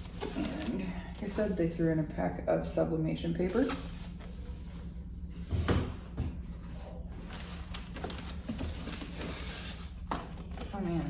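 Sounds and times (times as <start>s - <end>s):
packaging scraping and rustling: 7.1s - 11.0s.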